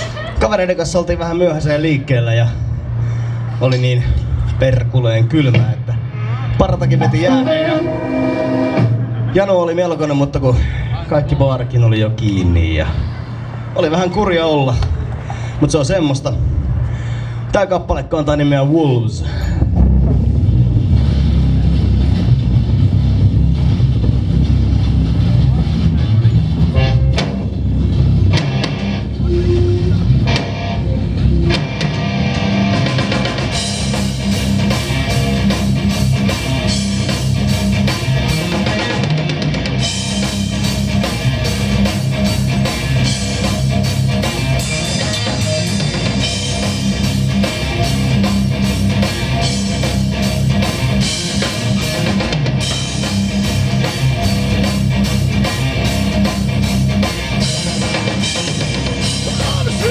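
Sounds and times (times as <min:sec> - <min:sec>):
bass guitar: 0:00.0 - 0:59.9
electric guitars: 0:05.6 - 0:15.6, 0:19.8 - 0:59.9
drums and cymbals: 0:19.5 - 0:59.9.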